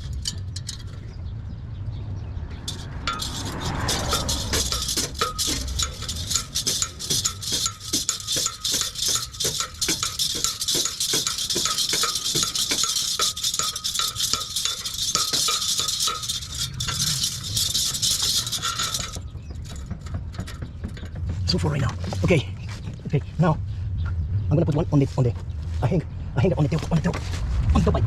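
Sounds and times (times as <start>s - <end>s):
ratchet wrench clicking: 2.7s - 19.8s.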